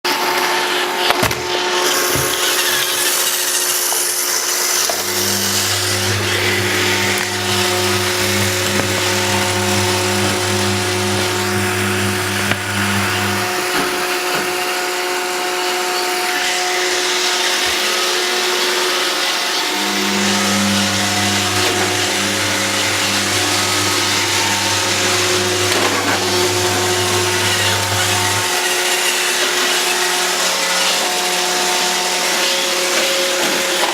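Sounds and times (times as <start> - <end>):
robot vacuum running: 1.8 - 33.9
deeper hum: 4.9 - 14.9, 19.6 - 29.3.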